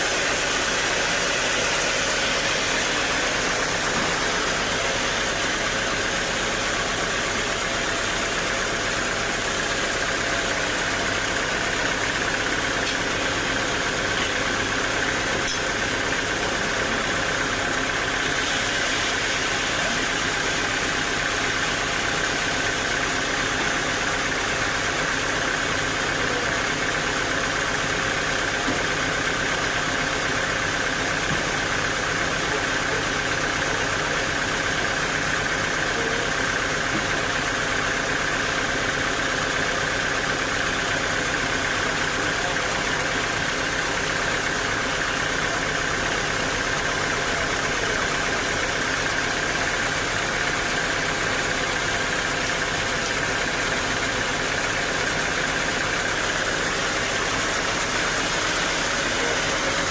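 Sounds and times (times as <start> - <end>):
sawmill machinery drone: 0.0 - 59.9.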